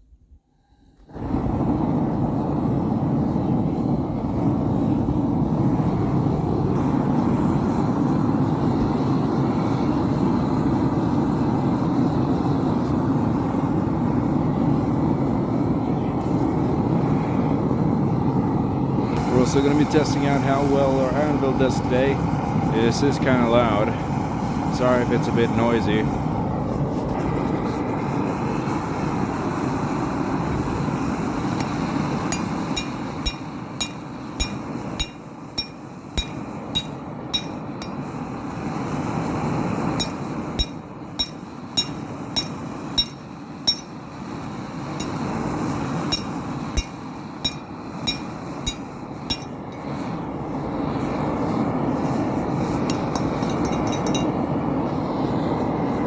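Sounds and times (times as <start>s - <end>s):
forge roaring steadily: 1.1s - 56.0s
hammer ringing on anvil: 32.3s - 38.0s, 40.0s - 44.0s, 45.0s - 45.3s, 46.1s - 49.6s, 52.9s - 54.3s.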